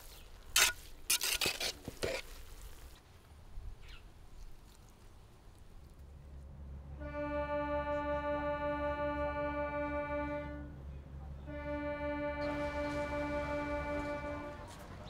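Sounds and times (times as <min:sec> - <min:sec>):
constant low hum: 0:03.0 - 0:15.0
reed instrument steady note: 0:06.4 - 0:15.0.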